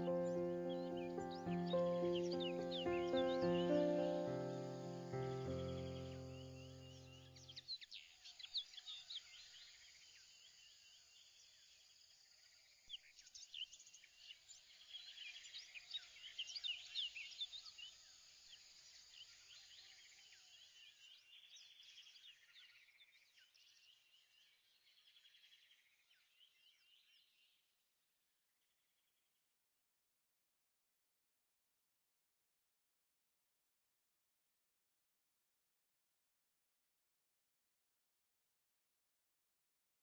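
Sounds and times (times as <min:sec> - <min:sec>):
small birds chirping: 0:00.0 - 0:27.6.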